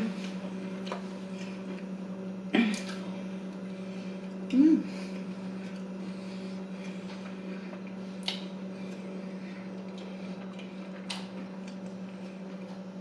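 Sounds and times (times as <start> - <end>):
steady low hum: 0.0 - 13.0
soft chewing: 2.8 - 13.0.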